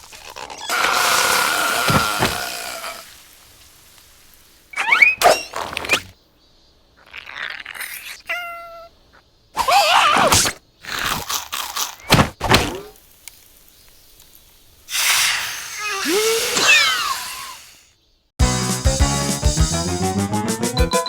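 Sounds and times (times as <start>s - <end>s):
cartoon character squealing: 4.8s - 5.4s, 15.0s - 17.8s
pitched squeak: 4.8s - 6.1s
hissing swell: 14.9s - 17.9s.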